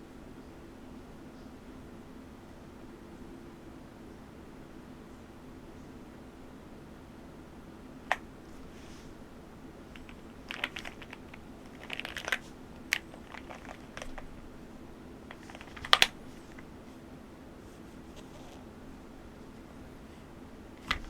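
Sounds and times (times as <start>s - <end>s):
packaging crinkling: 10.0s - 14.5s, 15.3s - 16.7s.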